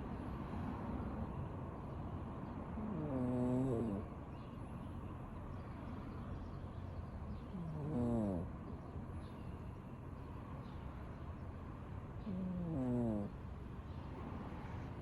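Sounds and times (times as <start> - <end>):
cat snoring: 2.8 - 4.0, 7.5 - 8.5, 12.2 - 13.4.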